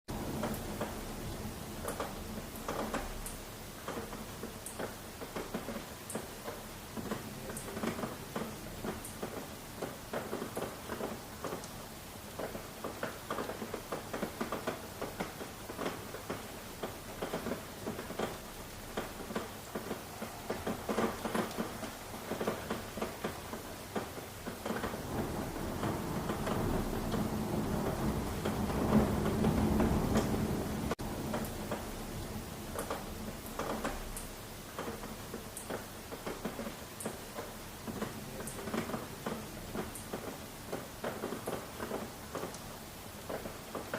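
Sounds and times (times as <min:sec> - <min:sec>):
rain patter: 0:00.1 - 0:43.9.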